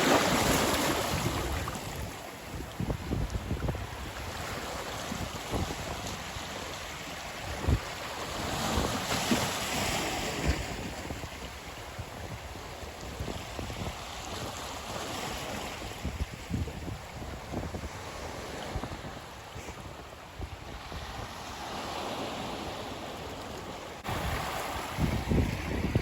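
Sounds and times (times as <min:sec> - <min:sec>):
ocean surf washing ashore: 0:00.0 - 0:26.0
wind buffeting microphone: 0:00.0 - 0:26.0.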